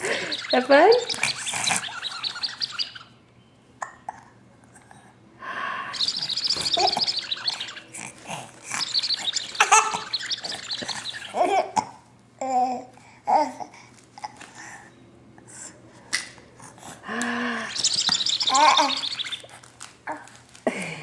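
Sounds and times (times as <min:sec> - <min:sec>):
baby laughing: 0:09.6 - 0:10.1, 0:11.0 - 0:13.6, 0:18.4 - 0:19.0.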